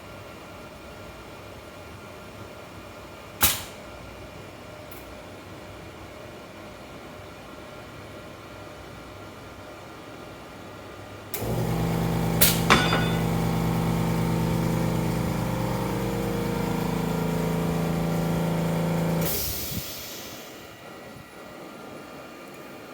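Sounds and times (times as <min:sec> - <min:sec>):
small motor running: 0:11.4 - 0:19.3
brief hiss: 0:19.2 - 0:20.9.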